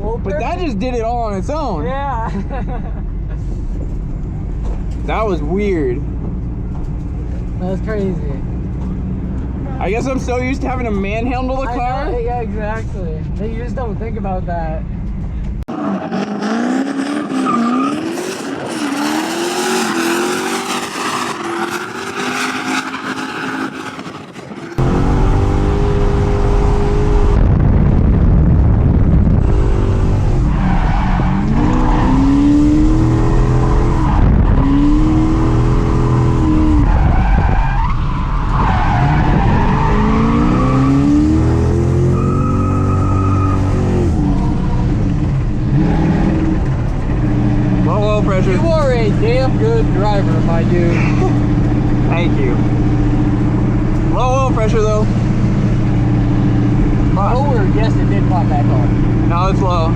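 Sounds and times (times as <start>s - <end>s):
car engine revving: 15.6s - 59.9s
tires squealing and skidding: 15.7s - 24.8s, 30.4s - 45.1s
heavy low rumble: 24.8s - 40.5s, 43.7s - 59.9s.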